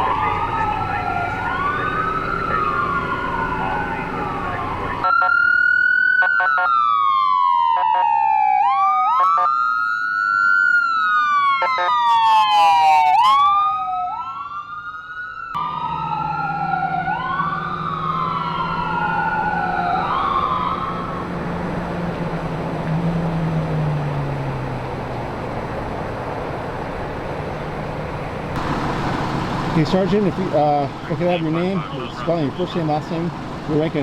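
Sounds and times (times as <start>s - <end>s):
low engine drone: 0.0s - 5.0s, 15.6s - 34.0s
emergency sirens wailing: 0.0s - 34.0s.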